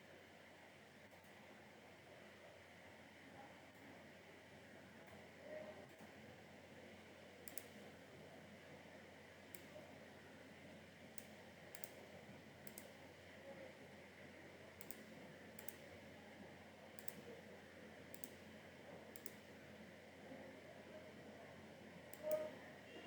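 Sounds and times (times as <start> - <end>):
faint computer mouse clicks: 7.4 - 7.9, 11.2 - 13.0, 14.8 - 15.9, 17.0 - 17.4, 18.1 - 18.5, 19.1 - 19.5, 22.1 - 22.6.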